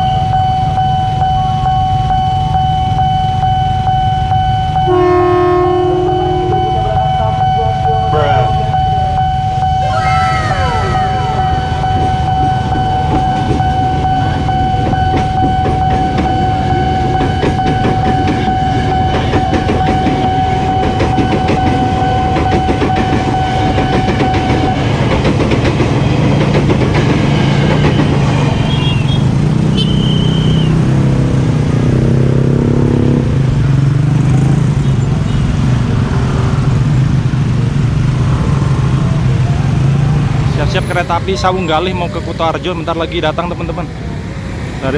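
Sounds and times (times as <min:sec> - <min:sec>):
steady high tone: 0:03.7 - 0:15.2, 0:40.1 - 0:44.9
short high beeps: 0:05.6 - 0:14.2
train wheels clacking over rails: 0:12.4 - 0:29.5
low rumble of road traffic: 0:24.6 - 0:44.9.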